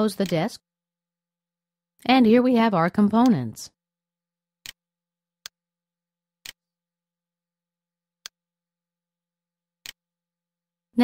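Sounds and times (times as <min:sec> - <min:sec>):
computer mouse clicking: 0:09.8 - 0:10.0.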